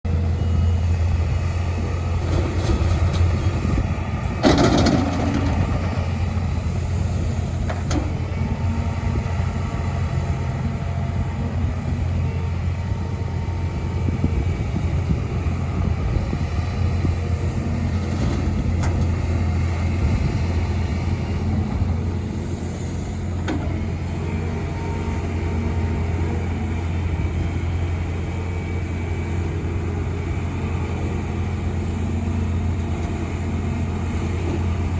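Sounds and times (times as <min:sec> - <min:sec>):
diesel excavator engine: 0:00.1 - 0:34.9
soil and rock clattering: 0:02.2 - 0:06.2.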